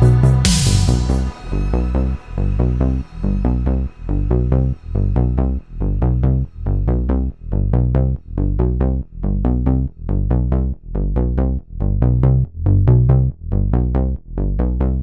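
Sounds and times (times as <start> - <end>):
electronic music with pulsing synthesizer: 0.0 - 7.4.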